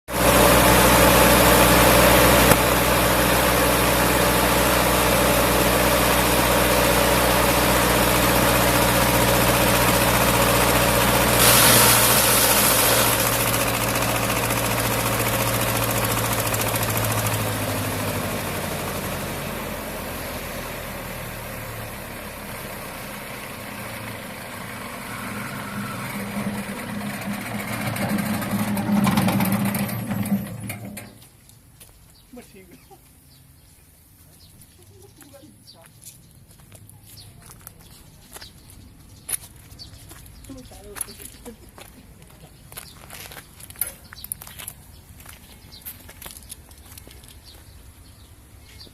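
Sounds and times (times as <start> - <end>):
wood chipper engine running: 0.1 - 31.3.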